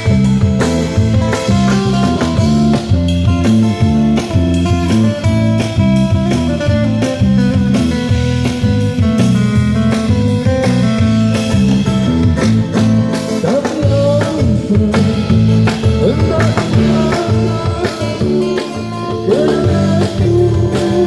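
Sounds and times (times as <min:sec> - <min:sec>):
band playing guitar bass and drums: 0:00.0 - 0:21.0
person singing: 0:13.3 - 0:21.0.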